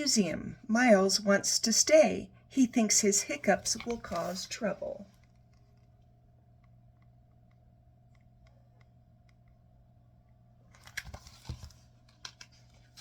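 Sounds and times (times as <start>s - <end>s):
faint room hum: 0.0s - 13.0s
paper rustling and crinkling: 10.8s - 13.0s.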